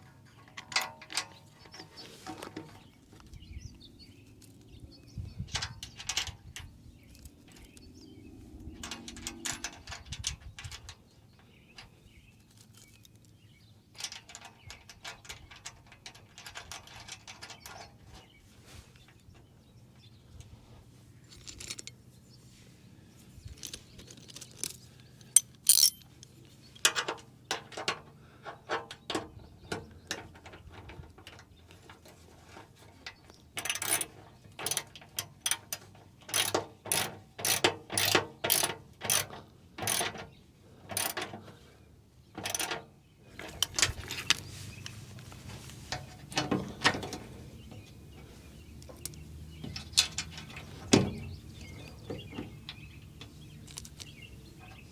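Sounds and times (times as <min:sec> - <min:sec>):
ratchet wrench clicking: 0:25.4 - 0:26.0, 0:36.3 - 0:40.0, 0:40.9 - 0:41.2.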